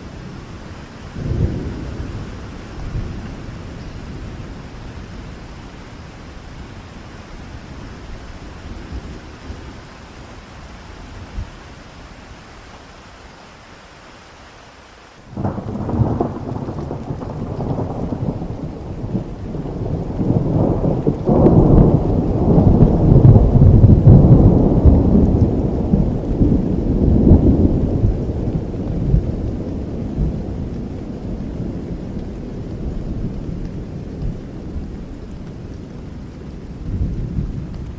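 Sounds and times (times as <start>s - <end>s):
steady rain: 0.0s - 37.9s
thunder rolling: 15.4s - 34.8s.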